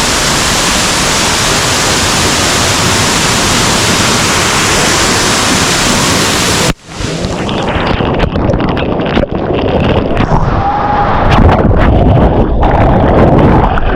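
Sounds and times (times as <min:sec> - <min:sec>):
waterfall rushing: 0:00.0 - 0:07.9
wind rumble on microphone: 0:00.0 - 0:13.9.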